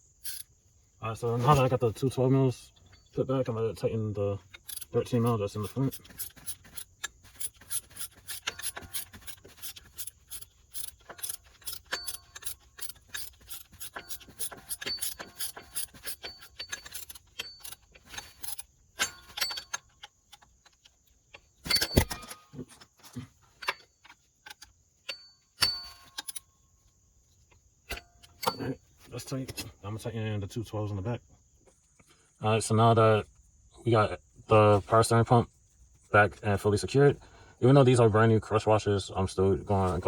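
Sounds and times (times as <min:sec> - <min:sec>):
ratchet wrench clicking: 0:00.1 - 0:00.5, 0:04.4 - 0:21.1, 0:23.6 - 0:26.5.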